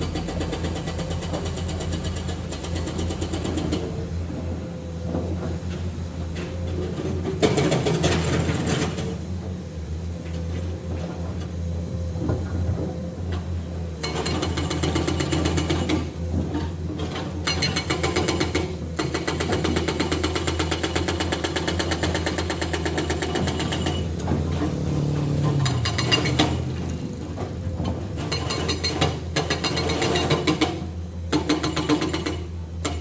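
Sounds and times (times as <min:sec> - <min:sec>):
diesel engine running: 0:21.9 - 0:29.4.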